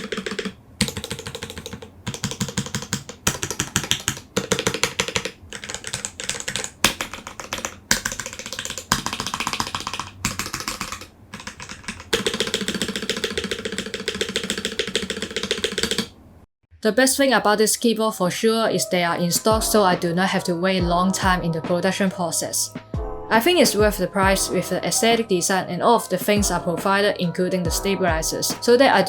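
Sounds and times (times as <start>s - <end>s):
mechanical keyboard typing: 0.0s - 16.2s.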